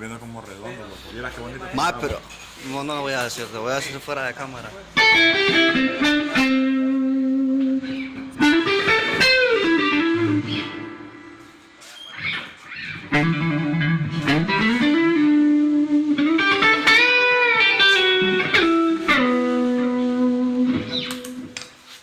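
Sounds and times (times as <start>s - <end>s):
guitar melody with bends: 5.0s - 21.7s.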